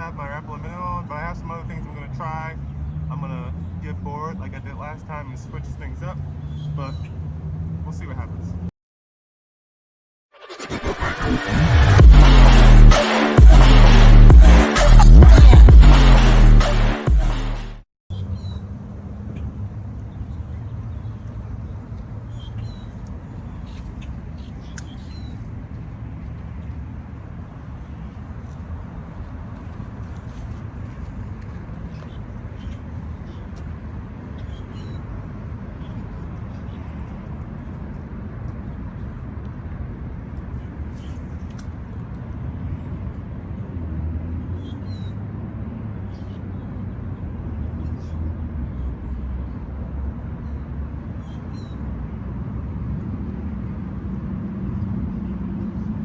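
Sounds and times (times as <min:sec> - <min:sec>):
road traffic hum: 0:00.0 - 0:08.7, 0:10.6 - 0:56.0
bird chirps: 0:06.4 - 0:07.2, 0:18.1 - 0:18.7, 0:22.3 - 0:25.5
intro music: 0:10.4 - 0:17.8
low outdoor rumble: 0:10.8 - 0:44.4, 0:47.4 - 0:56.0.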